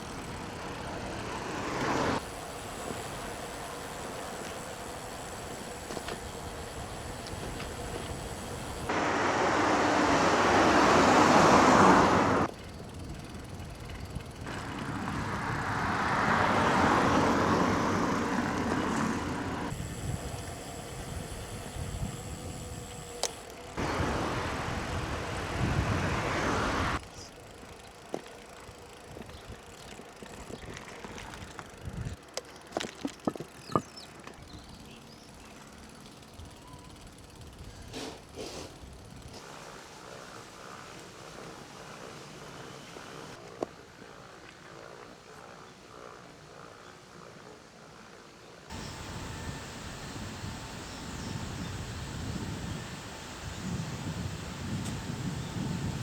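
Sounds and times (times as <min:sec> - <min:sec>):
vehicle passing: 0:00.0 - 0:12.5, 0:14.4 - 0:21.3, 0:23.6 - 0:27.0, 0:48.7 - 0:56.0
wind and road noise: 0:00.0 - 0:35.0, 0:48.7 - 0:56.0.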